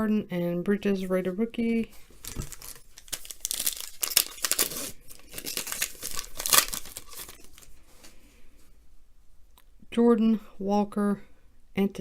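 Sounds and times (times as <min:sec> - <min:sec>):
card pack wrapper tearing and crinkling: 0:02.1 - 0:07.8.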